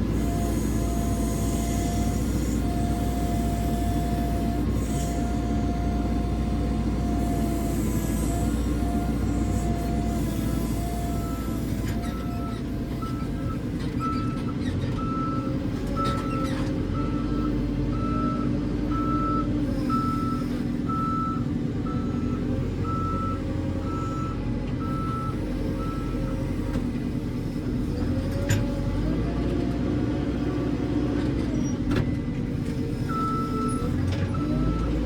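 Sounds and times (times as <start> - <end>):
diesel engine running: 0.0 - 35.0
reversing alarm beeping: 7.0 - 14.4, 16.0 - 26.3, 33.0 - 35.0.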